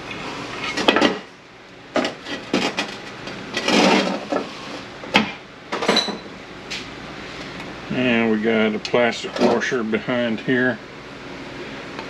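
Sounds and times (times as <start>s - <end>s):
metal scraping rub: 2.0s - 4.9s.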